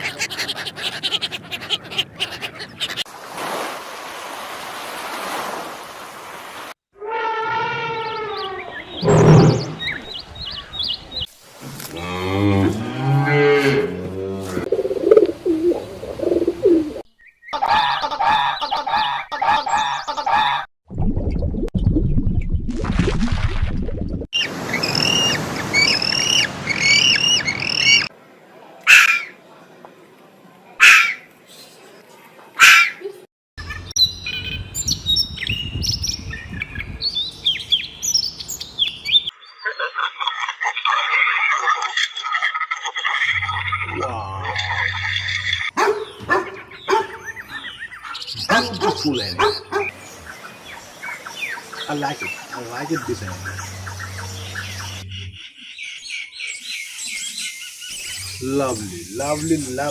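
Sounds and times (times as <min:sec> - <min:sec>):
songbirds chirping and whistling: 0:08.0 - 0:11.3, 0:16.6 - 0:20.6, 0:24.4 - 0:28.1, 0:33.6 - 0:40.4, 0:43.3 - 0:59.9.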